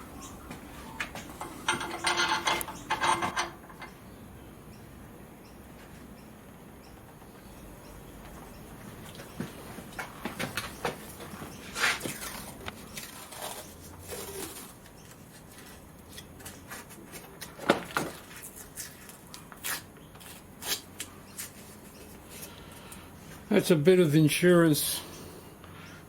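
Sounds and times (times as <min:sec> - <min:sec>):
small parts clicking and tapping: 0:01.0 - 0:04.0.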